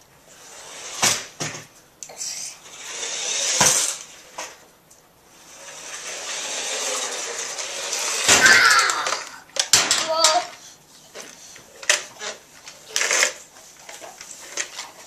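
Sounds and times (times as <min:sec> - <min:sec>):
toy car electric motor whirring: 0:00.3 - 0:01.4, 0:02.2 - 0:04.6, 0:05.3 - 0:09.4, 0:11.2 - 0:14.7.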